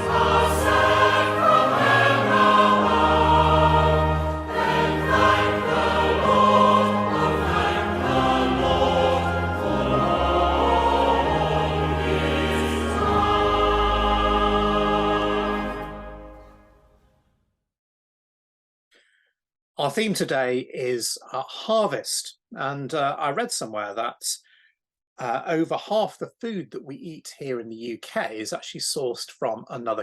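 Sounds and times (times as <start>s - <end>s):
choir singing a hymn: 0.0s - 16.7s
instrumental accompaniment: 0.0s - 17.0s.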